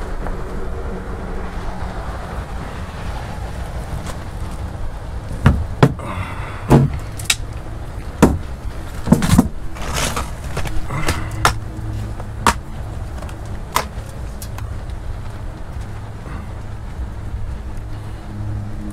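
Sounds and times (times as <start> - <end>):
steady low rumble: 0.0 - 18.9
knocks and clunks: 5.3 - 6.0, 6.7 - 7.1, 8.2 - 11.6.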